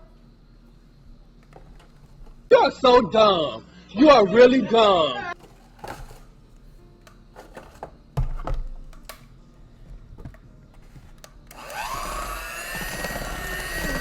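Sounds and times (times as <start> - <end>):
electric hand mixer whine: 11.5 - 14.0.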